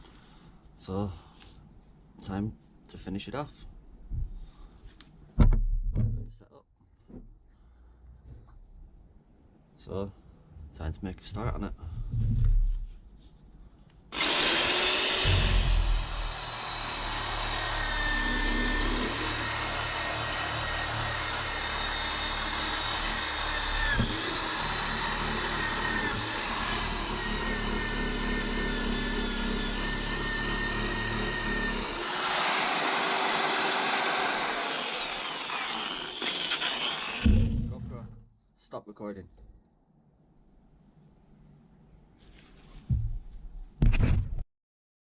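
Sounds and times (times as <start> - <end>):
polishing tool motor whine: 14.2 - 37.5.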